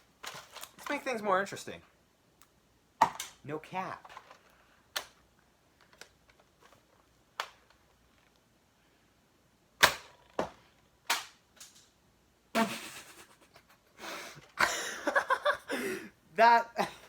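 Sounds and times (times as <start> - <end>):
toy gun handling clicks: 2.4 - 3.4, 4.0 - 6.6, 9.8 - 10.5, 11.1 - 11.9
toy shotgun firing snap: 9.8 - 10.3.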